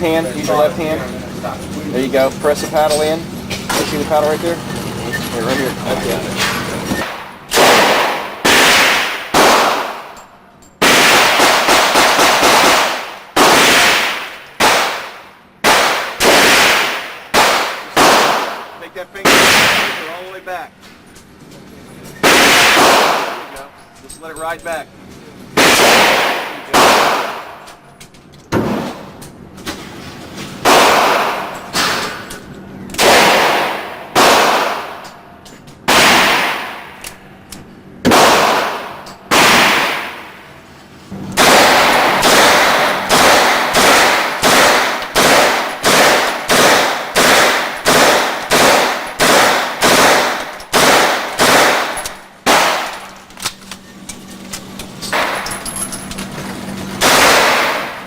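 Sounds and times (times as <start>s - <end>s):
gunshots with ringing tail: 7.1s - 10.2s, 10.8s - 20.2s, 22.2s - 23.5s, 25.6s - 27.6s, 30.6s - 32.2s, 33.0s - 35.0s, 35.9s - 37.0s, 38.0s - 40.5s, 41.4s - 53.1s, 57.0s - 58.0s.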